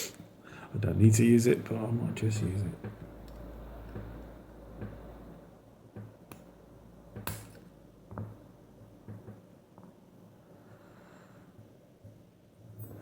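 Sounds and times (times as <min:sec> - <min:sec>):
small objects clicking on workbench: 0:07.2 - 0:08.3.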